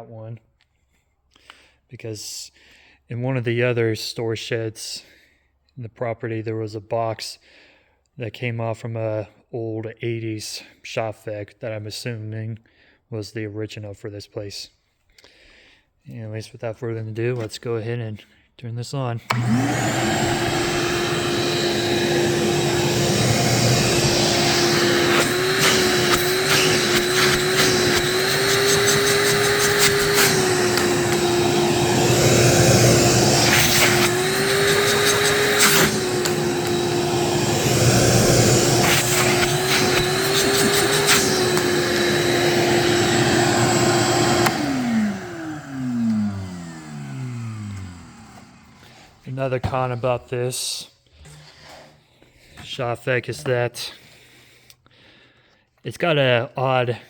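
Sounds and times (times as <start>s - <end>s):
motor winding down whine: 19.3s - 48.7s
shop vacuum running: 19.3s - 49.8s.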